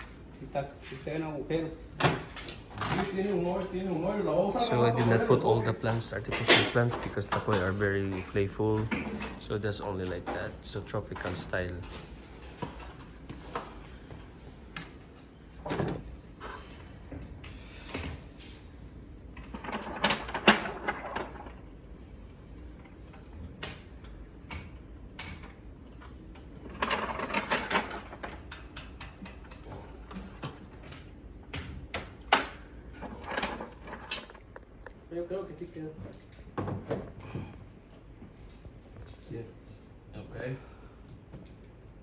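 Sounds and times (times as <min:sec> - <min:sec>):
knocks clicks and clattering: 0:26.4 - 0:35.0.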